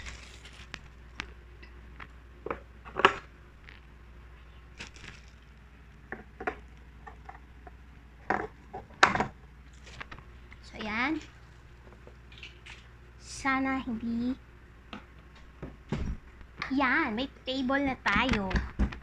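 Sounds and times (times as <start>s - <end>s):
grill parts clicking and knocking: 4.8s - 13.0s.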